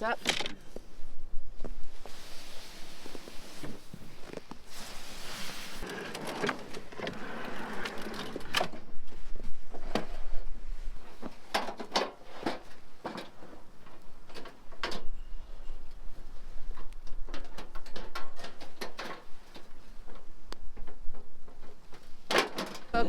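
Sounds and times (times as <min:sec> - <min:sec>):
kitchen unit scraping out: 0:04.7 - 0:08.7.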